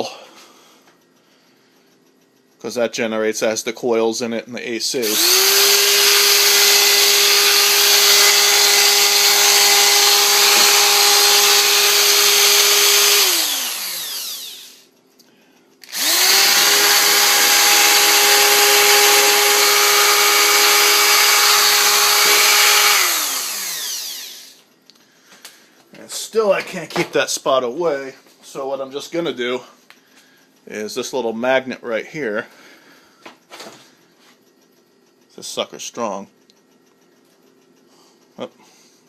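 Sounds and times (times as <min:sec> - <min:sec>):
electric drill whining: 0:05.0 - 0:14.9, 0:15.8 - 0:24.7.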